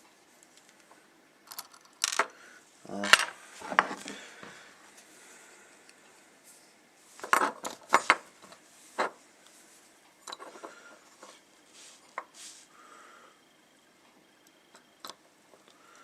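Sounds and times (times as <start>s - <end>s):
small parts clicking and clinking: 0.4s - 2.4s, 3.0s - 3.4s, 10.2s - 11.4s.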